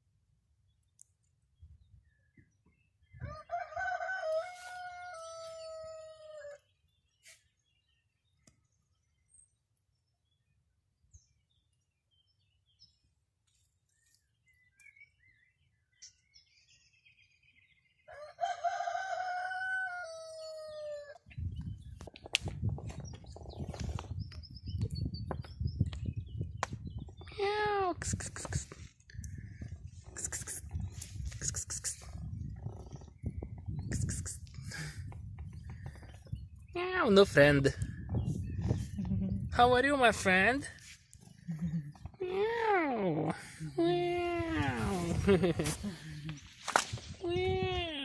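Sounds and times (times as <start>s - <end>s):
rooster crowing: 3.2s - 6.6s, 18.1s - 21.2s.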